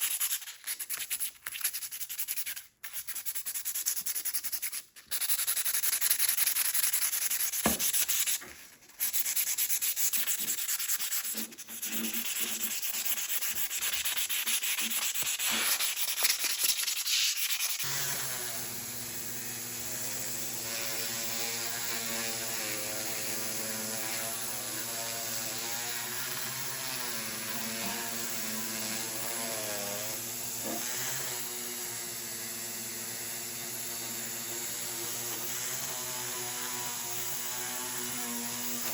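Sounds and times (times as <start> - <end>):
sandpaper rubbing on steel: 0.0 - 17.9
motor hum: 17.9 - 25.7.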